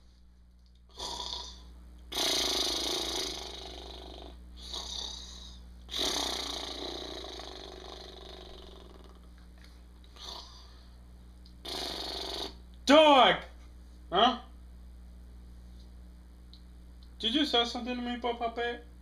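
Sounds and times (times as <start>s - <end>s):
man imitating dog snoring: 0.9s - 9.3s, 10.1s - 10.7s, 11.6s - 12.6s.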